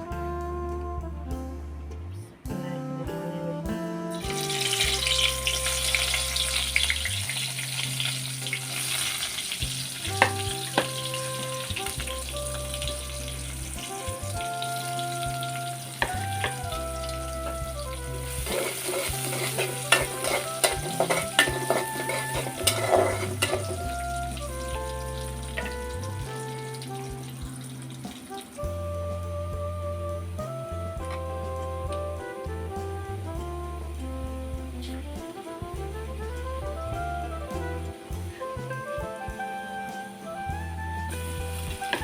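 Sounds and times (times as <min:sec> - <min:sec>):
background music with bass: 0:00.0 - 0:42.0
curry sizzling in oil: 0:04.3 - 0:17.6, 0:18.2 - 0:28.7
utensil scraping a pan: 0:18.4 - 0:23.7.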